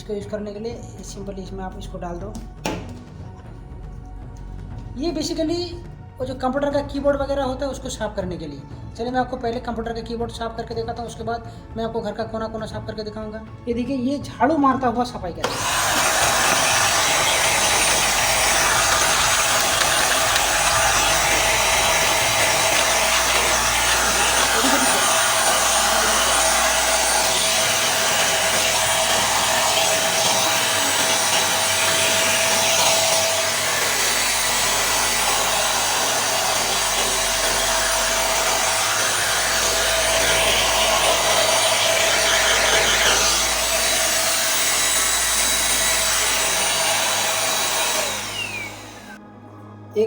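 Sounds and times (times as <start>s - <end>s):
handheld vacuum cleaner whine: 15.4s - 49.2s.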